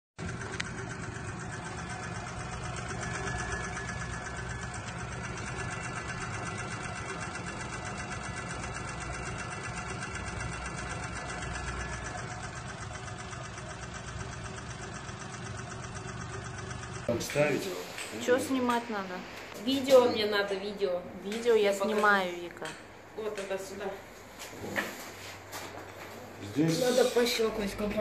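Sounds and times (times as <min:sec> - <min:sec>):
car engine running: 0:00.2 - 0:17.1
fast ticking engine knock: 0:00.2 - 0:17.1.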